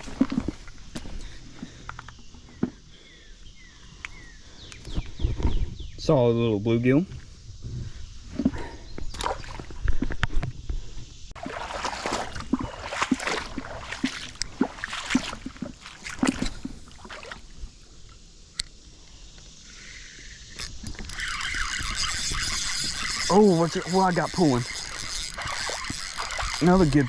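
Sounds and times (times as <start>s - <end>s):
water sloshing in a creek: 0.0s - 3.1s, 7.9s - 18.5s, 20.5s - 27.0s
fishing reel ratcheting clicks: 19.9s - 27.0s.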